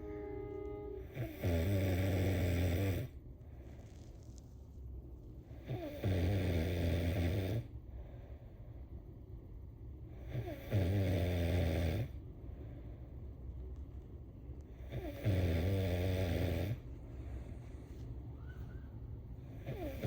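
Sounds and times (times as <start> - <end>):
person snoring: 1.1 - 3.1.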